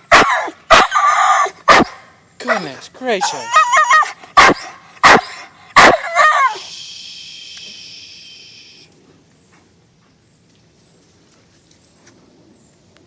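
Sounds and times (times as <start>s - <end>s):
dog barking: 0.1s - 6.6s
dog whining call: 0.1s - 6.9s.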